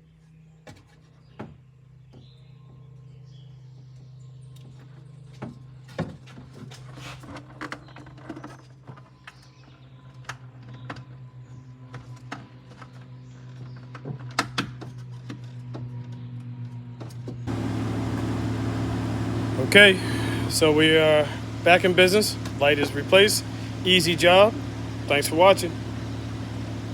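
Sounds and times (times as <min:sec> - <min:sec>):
loud steady running sound: 0:17.5 - 0:26.9
steady low hum: 0:17.5 - 0:26.9.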